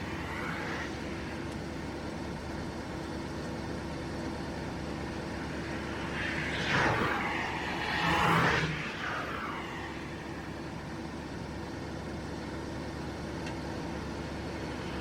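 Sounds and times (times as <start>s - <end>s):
car passing: 0.0s - 2.5s, 4.6s - 11.4s
car approaching: 0.0s - 15.0s
low traffic hum: 0.0s - 15.0s.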